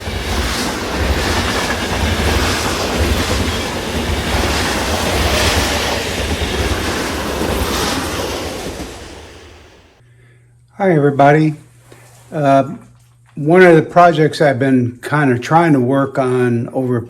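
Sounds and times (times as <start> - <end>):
train rumbling on rails: 0.0 - 10.0.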